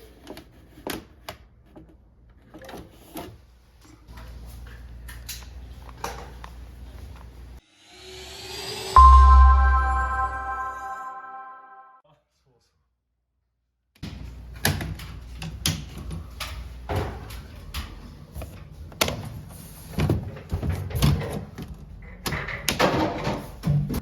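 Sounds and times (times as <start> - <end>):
knocks and clatter of parts: 20.0 - 24.0.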